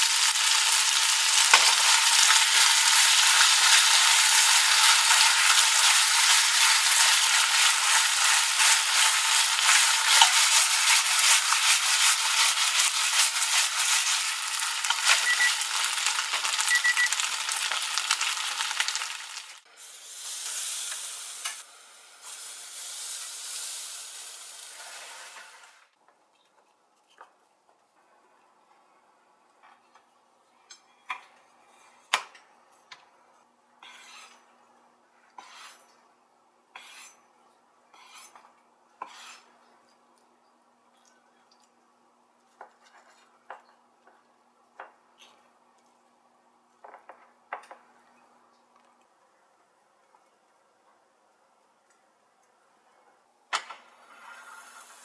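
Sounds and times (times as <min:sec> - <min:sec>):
food sizzling in a frying pan: 0:00.0 - 0:25.9, 0:53.8 - 0:55.0.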